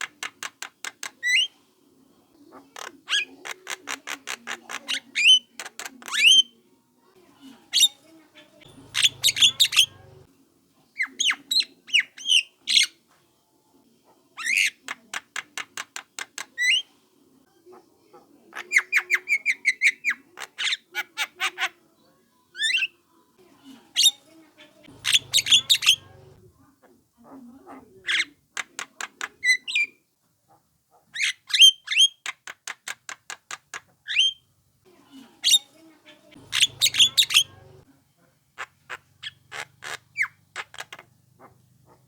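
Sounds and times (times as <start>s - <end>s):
bird harsh clicking calls: 0.0s - 1.5s, 2.8s - 6.3s, 8.7s - 10.2s, 14.4s - 16.8s, 24.0s - 26.3s, 31.2s - 34.3s, 36.3s - 37.8s, 38.6s - 42.0s
bird harsh calls: 7.7s - 10.3s, 24.0s - 26.4s, 35.4s - 37.8s, 38.6s - 42.0s.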